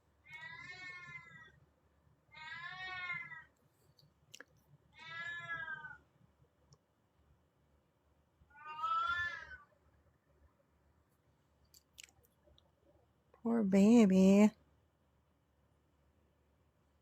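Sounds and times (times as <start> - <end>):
cat meowing: 0.4 - 1.5, 5.0 - 6.0.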